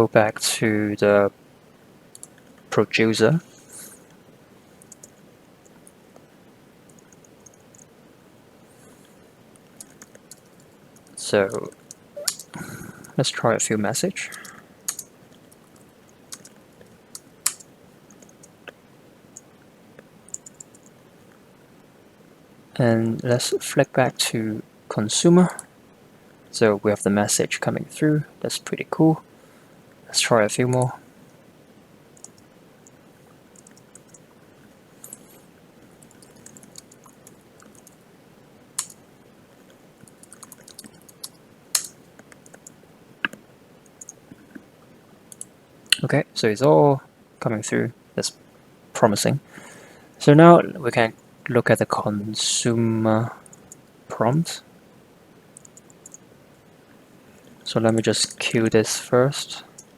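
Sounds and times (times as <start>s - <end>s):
typing on computer keyboard: 2.1s - 2.4s, 4.8s - 5.2s, 9.8s - 12.5s, 14.3s - 18.5s, 20.3s - 20.9s, 33.6s - 34.2s, 36.0s - 38.0s, 38.8s - 39.0s, 40.0s - 42.7s, 55.6s - 56.2s
keyboard key clicks: 12.2s - 12.5s, 40.2s - 43.4s.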